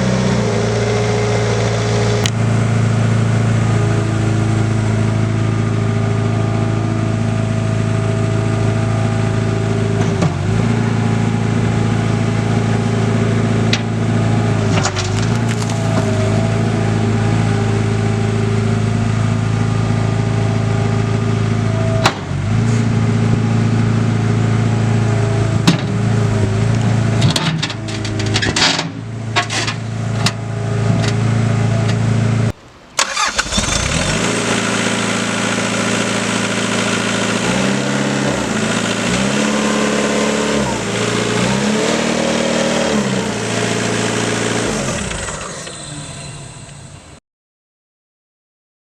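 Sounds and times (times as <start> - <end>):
diesel engine running: 0.0 - 47.2
engine clicks: 31.9 - 36.9.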